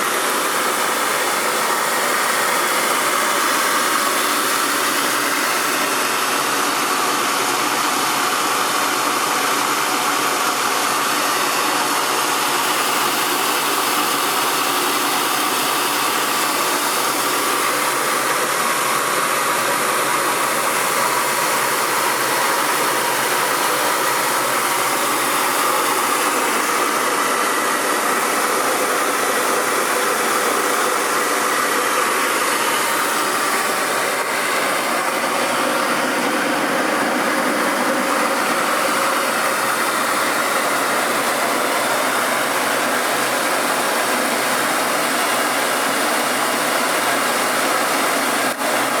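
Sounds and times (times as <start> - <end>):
rice milling machine running: 0.0 - 49.0.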